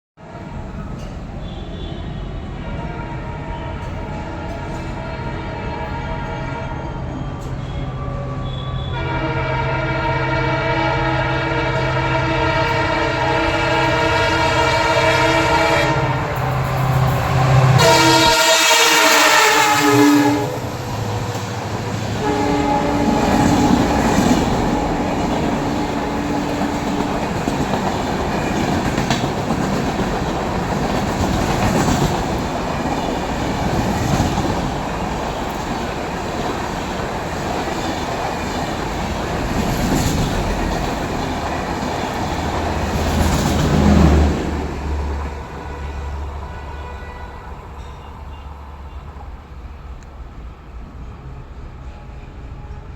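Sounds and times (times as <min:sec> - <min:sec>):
train horn: 0:00.2 - 0:30.0, 0:42.8 - 0:49.2, 0:51.7 - 0:52.9
train coaches rumbling: 0:00.2 - 0:52.9
wheels clacking over rail joints: 0:21.1 - 0:44.3.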